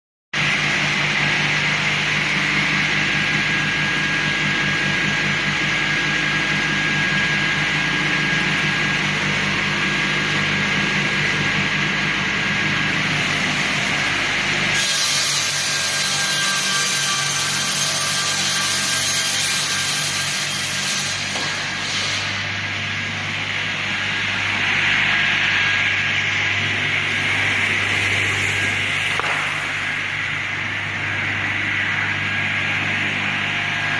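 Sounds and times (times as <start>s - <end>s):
table saw sawing wood: 12.9s - 22.6s.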